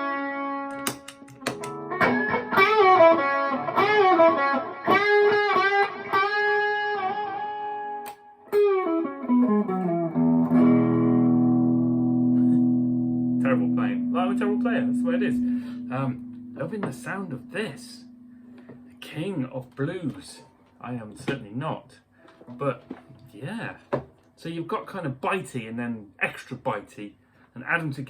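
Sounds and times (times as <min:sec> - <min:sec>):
overdriven electric guitar: 0:00.0 - 0:19.0.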